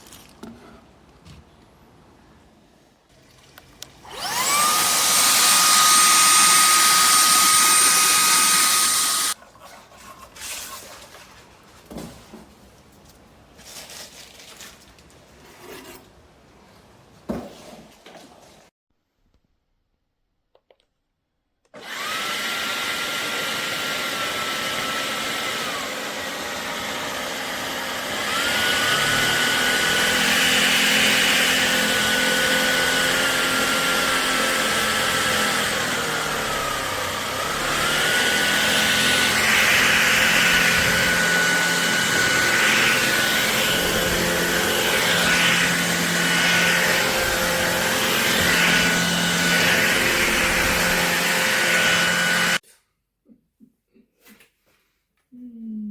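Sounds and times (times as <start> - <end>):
stick vacuum motor whine: 4.0 - 9.4, 21.8 - 52.6.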